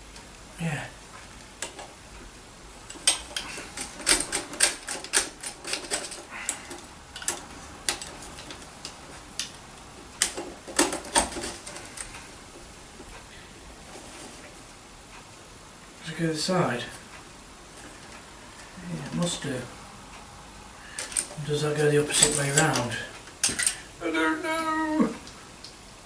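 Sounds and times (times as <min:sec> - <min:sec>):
vacuum cleaner parts clicking: 0:01.3 - 0:12.2, 0:20.9 - 0:24.0.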